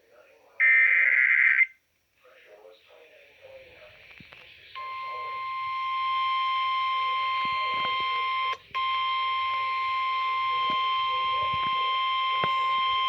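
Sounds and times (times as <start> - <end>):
piercing alert tone over radio: 0.6 - 1.8, 4.8 - 13.0.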